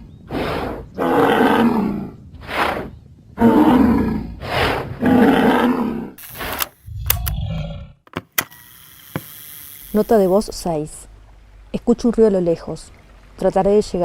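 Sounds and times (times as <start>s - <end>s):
large animals roaring: 0.3s - 6.2s, 6.9s - 8.0s.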